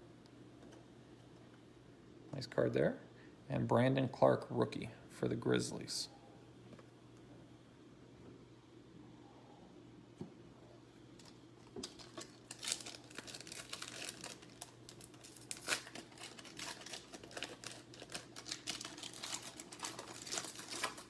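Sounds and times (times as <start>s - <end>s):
foil wrapper crinkling: 11.2s - 21.0s.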